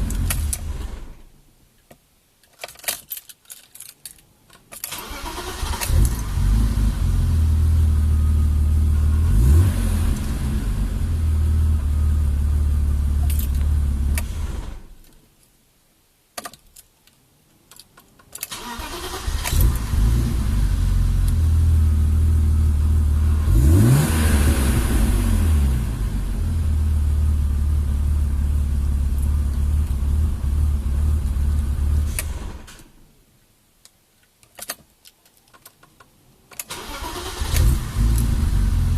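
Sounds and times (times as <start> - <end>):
car engine starting and idling: 0.0 - 1.3, 4.9 - 15.0, 18.5 - 33.0, 36.6 - 38.9.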